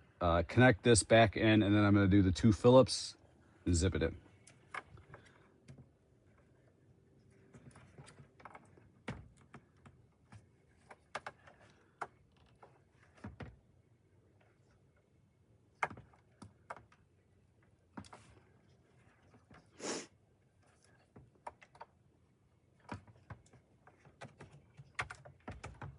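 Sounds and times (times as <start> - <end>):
light plastic clicks and knocks: 22.8 - 25.9.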